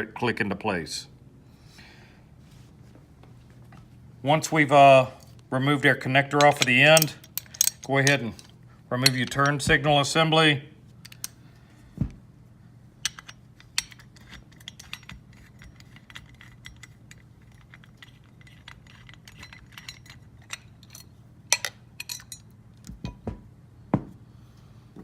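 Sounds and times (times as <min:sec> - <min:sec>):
steady low hum: 0:00.0 - 0:25.0
small metallic clicks and clinks: 0:06.4 - 0:09.6, 0:11.0 - 0:11.4, 0:13.0 - 0:23.2.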